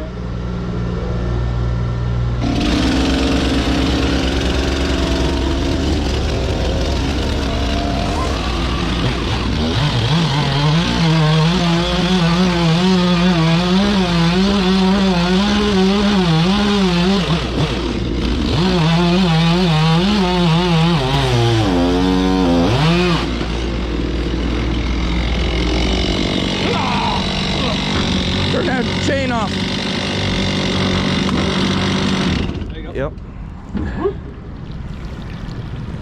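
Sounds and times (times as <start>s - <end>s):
low steady engine hum: 0.0s - 36.0s
chainsaw cutting timber: 2.4s - 32.8s.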